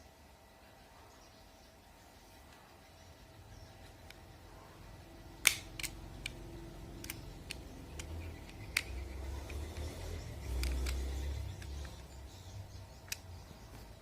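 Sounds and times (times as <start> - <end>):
swiftlet echolocation clicks: 5.4 - 13.5.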